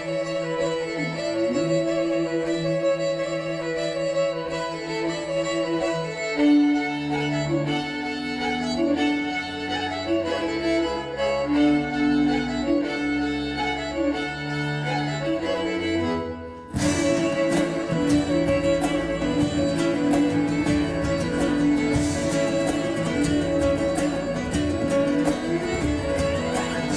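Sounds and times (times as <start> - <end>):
strummed guitar: 0.0 - 26.9
violin and cello melody: 0.0 - 26.9
busy rhythmic beat: 16.7 - 26.9.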